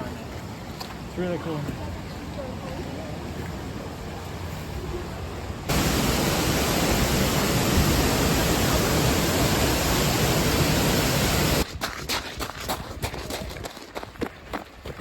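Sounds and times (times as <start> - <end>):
waterfall rushing: 5.2 - 11.6.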